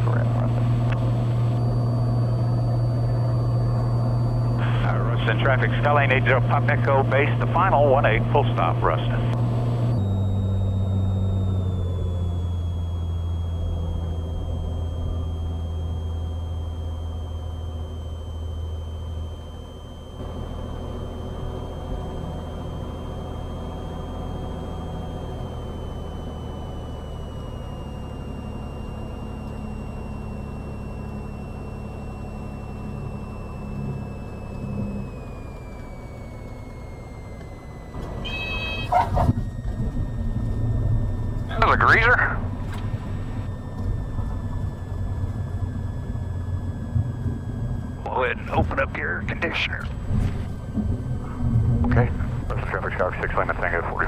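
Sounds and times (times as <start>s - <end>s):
airplane engine and propeller drone: 0.0s - 54.0s
stall warning horn: 38.0s - 39.9s.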